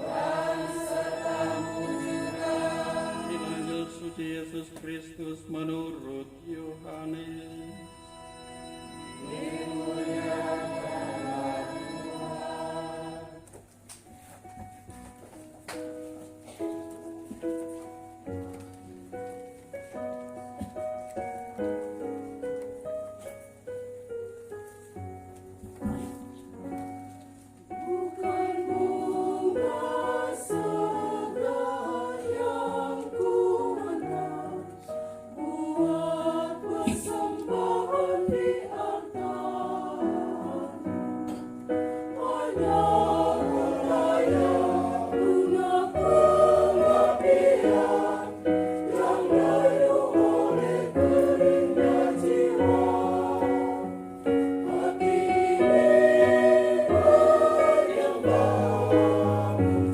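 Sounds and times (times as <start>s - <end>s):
church choir singing a hymn: 0.0s - 13.6s, 27.7s - 59.9s.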